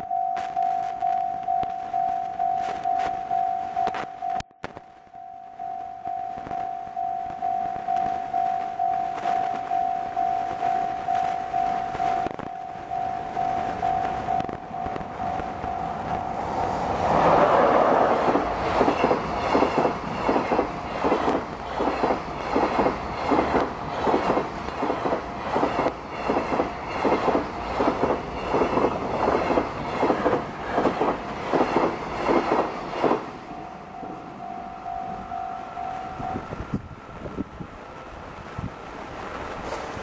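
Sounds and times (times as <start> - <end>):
level crossing alarm ringing: 0.0 - 16.9, 33.4 - 36.7
train wheels clacking over rail joints: 17.2 - 33.4.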